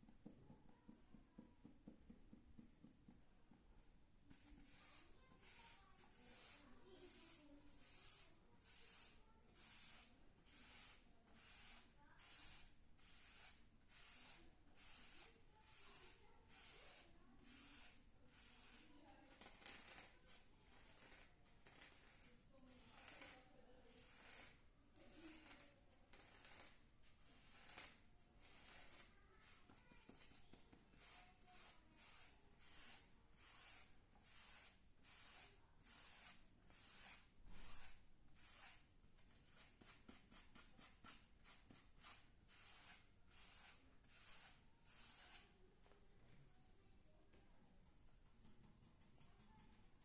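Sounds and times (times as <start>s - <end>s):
hissy scratching on a surface: 4.5s - 24.6s, 26.2s - 45.6s.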